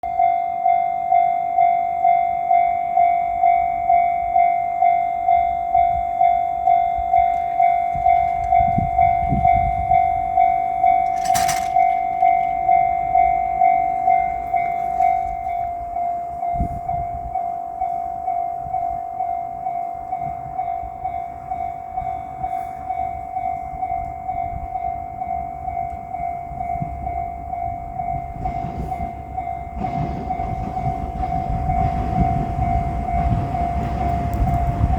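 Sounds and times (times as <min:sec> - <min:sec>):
level crossing bell ringing: 0:00.0 - 0:28.4
diesel train rumbling: 0:00.0 - 0:34.9.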